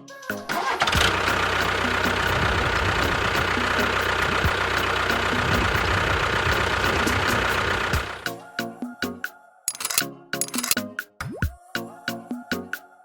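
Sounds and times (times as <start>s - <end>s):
engine idling: 1.0s - 8.2s.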